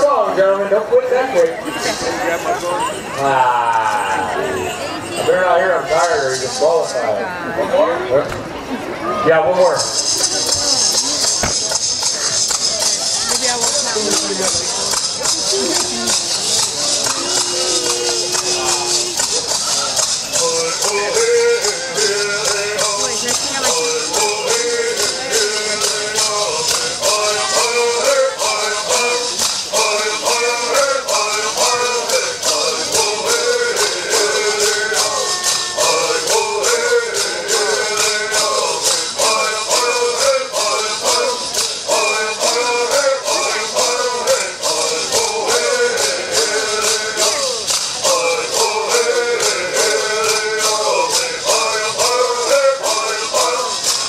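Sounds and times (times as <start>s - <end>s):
men singing in unison: 17.1s - 19.3s, 20.3s - 54.0s.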